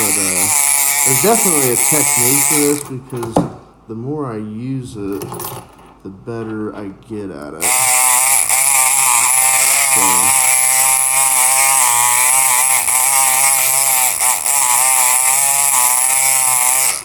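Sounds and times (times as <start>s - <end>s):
pick needle vibrating against lock pins: 0.0s - 3.3s, 7.6s - 17.0s
electric lock pick gun buzzing: 0.0s - 3.4s, 7.6s - 17.0s.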